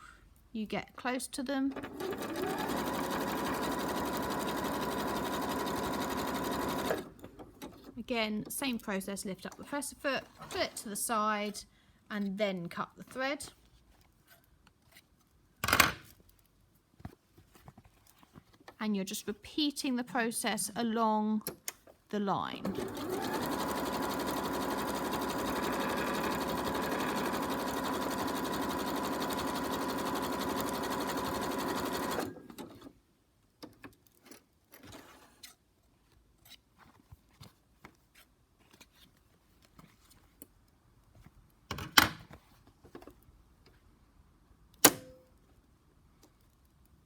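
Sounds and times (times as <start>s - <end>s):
sewing machine stitching fabric: 1.6s - 8.8s, 22.5s - 33.0s.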